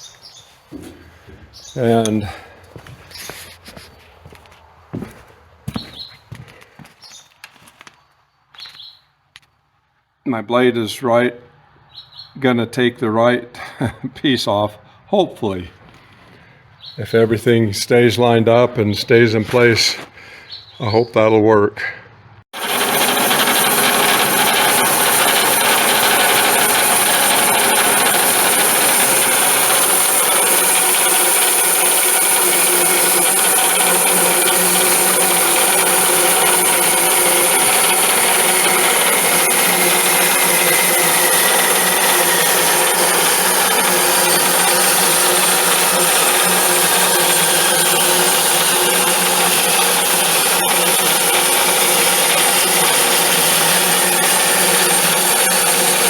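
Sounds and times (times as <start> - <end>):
bandsaw cutting wood: 22.5 - 56.0.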